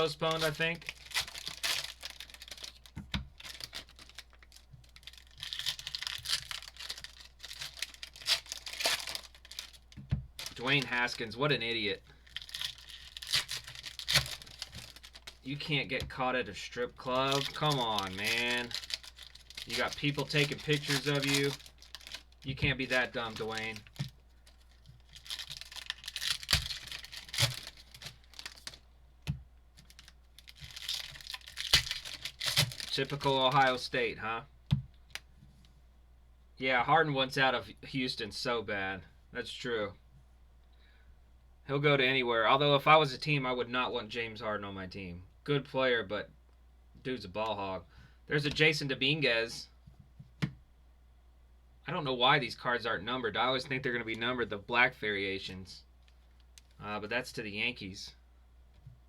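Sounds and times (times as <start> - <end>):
foil wrappers tearing and crinkling: 0.0 - 11.3, 12.2 - 15.7, 17.0 - 28.8, 29.8 - 33.8.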